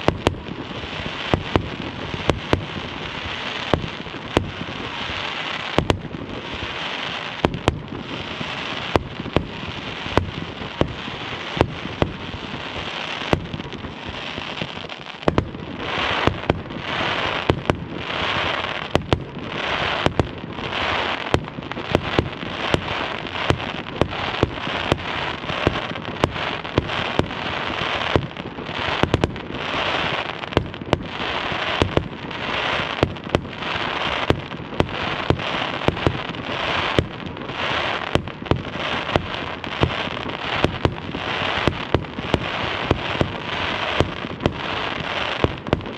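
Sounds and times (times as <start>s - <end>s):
fireworks crackling hiss: 0.0s - 45.9s
fireworks exploding with sharp bangs: 0.0s - 45.9s.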